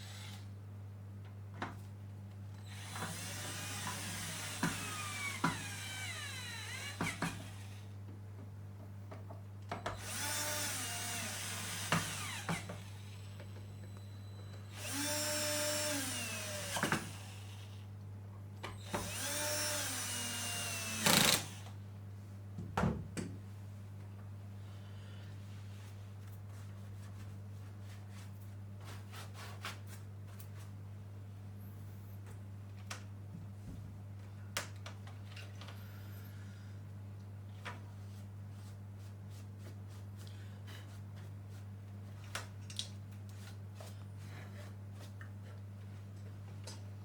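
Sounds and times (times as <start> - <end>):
electric screwdriver motor whine: 2.7 - 7.7, 10.0 - 13.0, 14.7 - 17.4, 18.9 - 21.6.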